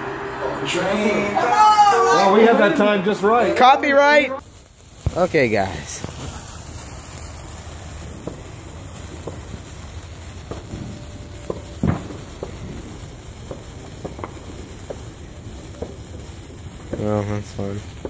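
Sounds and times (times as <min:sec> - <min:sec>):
firework hissing and crackling: 0:03.8 - 0:18.0.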